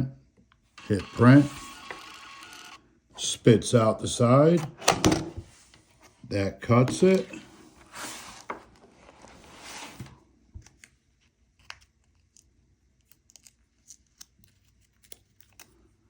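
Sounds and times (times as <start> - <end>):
paper label clicks and crinkles: 10.6 - 16.0.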